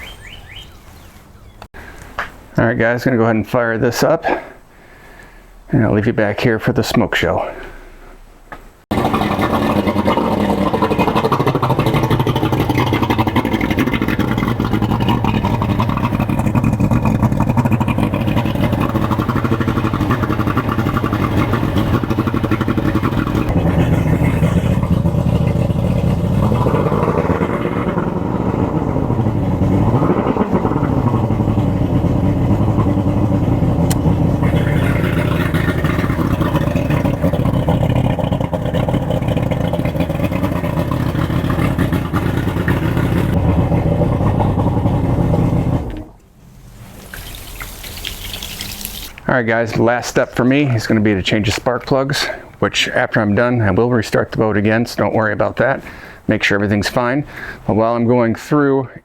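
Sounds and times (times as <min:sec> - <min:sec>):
boat engine running: 0:00.0 - 0:01.8, 0:08.9 - 0:51.6.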